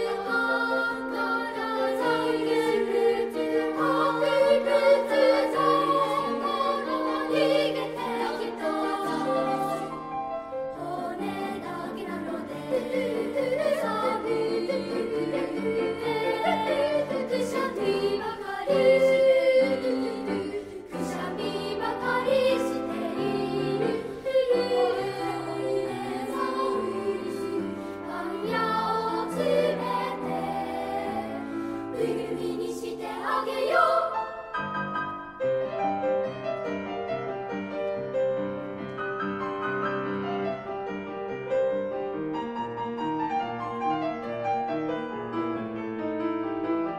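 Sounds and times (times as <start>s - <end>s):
children's choir singing: 0.0s - 34.7s
piano accompaniment: 0.0s - 46.9s.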